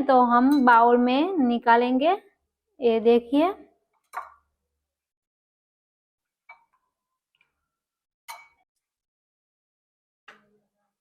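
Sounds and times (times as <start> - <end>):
metal utensil clinking a bowl: 0.4 - 1.0.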